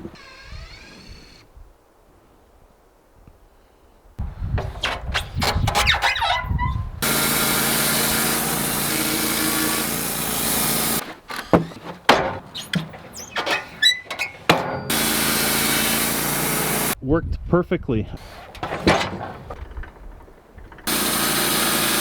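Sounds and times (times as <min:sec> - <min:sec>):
sawmill engine and blade running: 0:07.0 - 0:11.0, 0:14.8 - 0:17.0, 0:20.6 - 0:22.0
clanks and knocks of wood and metal: 0:07.0 - 0:15.0, 0:18.2 - 0:22.0.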